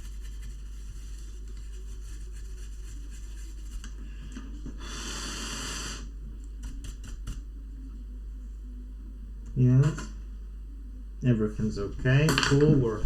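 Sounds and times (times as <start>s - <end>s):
steady hiss: 1.3s - 6.2s.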